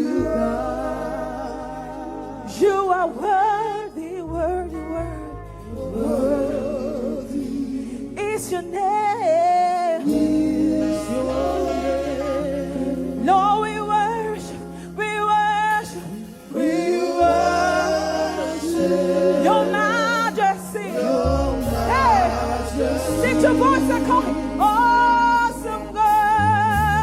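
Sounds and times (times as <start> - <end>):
backing voices singing: 0.0 - 4.4, 5.6 - 8.7, 9.9 - 14.6, 16.0 - 27.0
lead voice singing with vibrato: 0.0 - 14.7, 15.8 - 27.0
sustained low accompaniment: 10.1 - 27.0.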